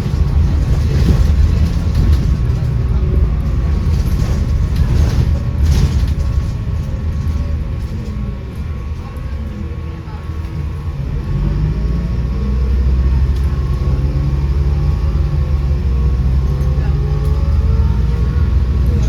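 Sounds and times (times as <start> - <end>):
bus diesel engine rumbling: 0.0 - 19.0
loud cooling fans: 0.0 - 19.0.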